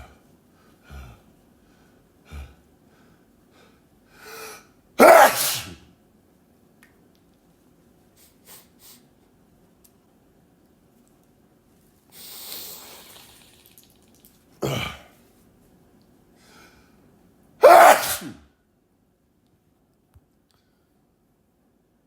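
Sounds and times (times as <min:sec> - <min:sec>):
person sneezing: 0:05.0 - 0:05.8, 0:14.6 - 0:15.2, 0:17.6 - 0:18.5
hissing breath: 0:12.1 - 0:13.4.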